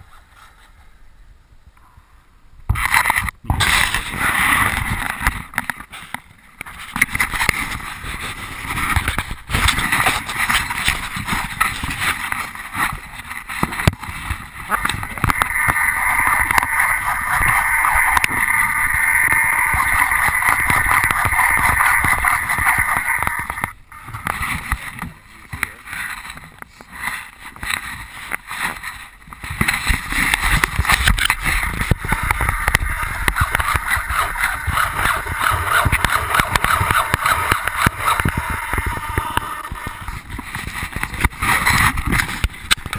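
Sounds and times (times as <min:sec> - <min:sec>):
model airplane motor buzzing: 0:15.2 - 0:23.6, 0:30.3 - 0:40.2.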